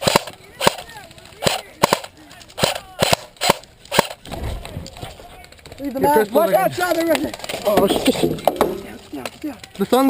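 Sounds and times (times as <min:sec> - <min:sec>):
airsoft rifle single shots: 0:01.4 - 0:04.2.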